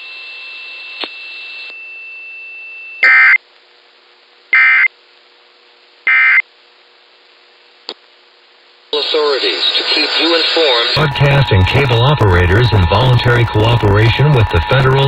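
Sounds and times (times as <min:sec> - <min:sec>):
warbling digital data tones: 0:10.9 - 0:15.0
thin steady tone: 0:11.0 - 0:15.0.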